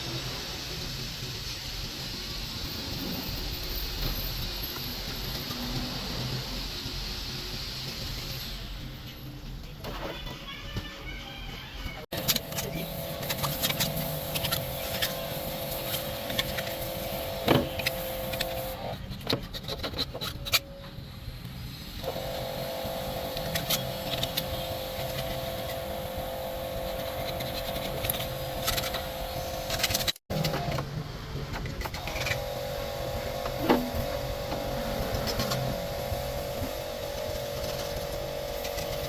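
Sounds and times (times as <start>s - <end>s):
workshop machine humming: 12.1s - 19.1s, 21.8s - 39.0s
metal parts clicking and knocking: 23.4s - 25.4s.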